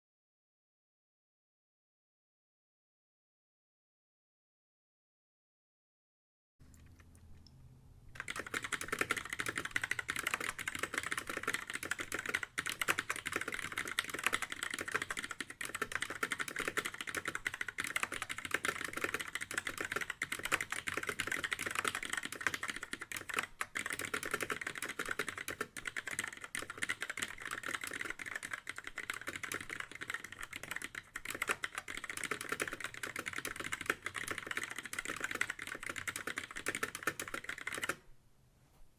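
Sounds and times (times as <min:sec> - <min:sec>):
mechanical keyboard typing: 0:08.2 - 0:38.0.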